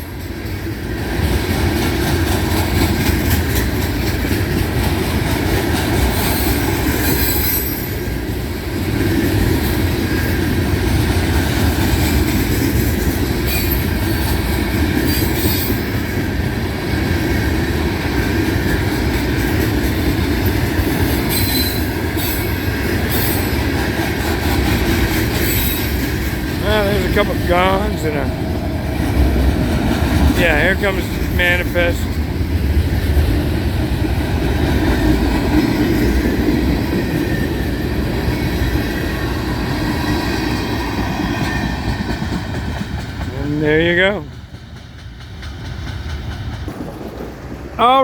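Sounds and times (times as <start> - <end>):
train wheels rumbling on rail: 0.0 - 48.0
high wheel squeals: 6.4 - 8.1.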